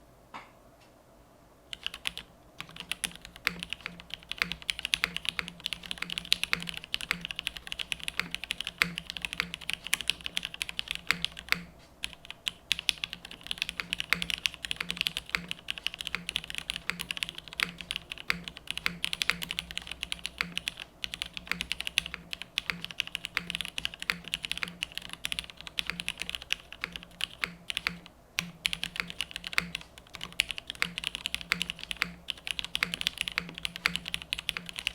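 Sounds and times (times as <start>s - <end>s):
mechanical keyboard typing: 1.7s - 34.9s.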